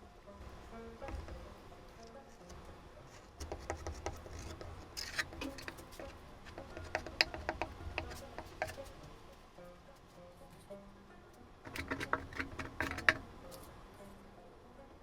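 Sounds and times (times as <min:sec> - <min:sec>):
hand tool scraping board: 0:01.1 - 0:01.5, 0:03.2 - 0:09.0, 0:11.7 - 0:13.7.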